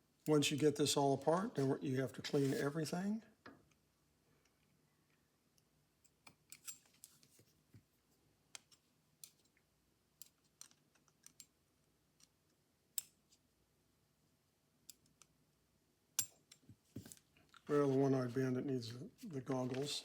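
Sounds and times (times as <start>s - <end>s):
metal parts and screwdriver clicking: 6.1s - 7.2s.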